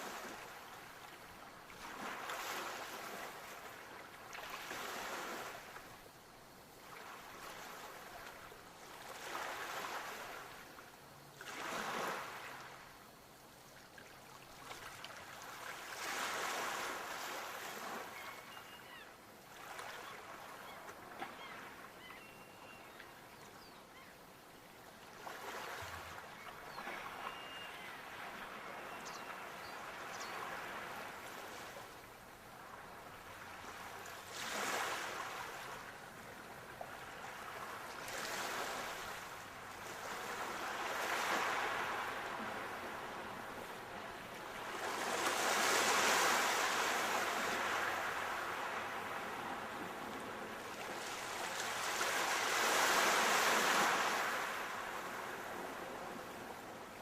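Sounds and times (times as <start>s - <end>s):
sea waves breaking on shore: 0.0s - 6.0s, 6.8s - 10.8s, 11.4s - 12.8s, 14.3s - 22.9s, 25.1s - 57.0s
faint short high calls: 26.3s - 29.6s.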